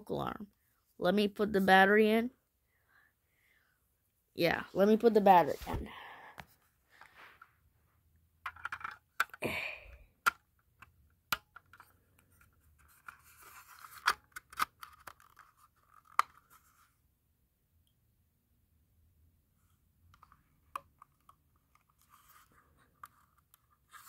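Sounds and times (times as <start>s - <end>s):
plastic scraping and rubbing: 11.7s - 16.8s.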